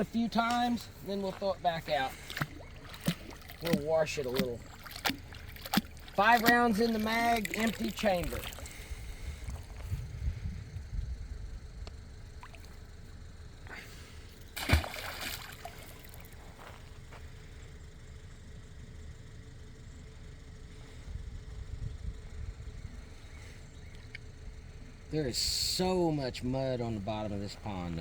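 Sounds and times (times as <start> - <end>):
low steady rumble: 0.0 - 28.0
object splashing into water: 2.1 - 6.8, 14.6 - 16.4.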